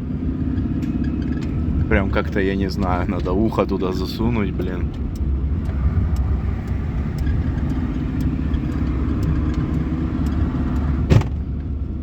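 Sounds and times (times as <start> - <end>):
car engine and road rumble: 0.0 - 12.0
faint light ticks: 2.2 - 10.9.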